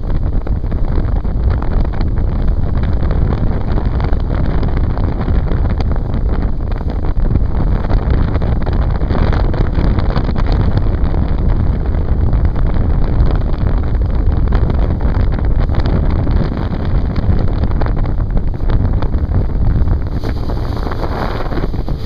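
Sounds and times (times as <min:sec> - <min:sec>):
motorboat engine and hull: 0:00.0 - 0:22.0
wind buffeting microphone: 0:00.0 - 0:22.0.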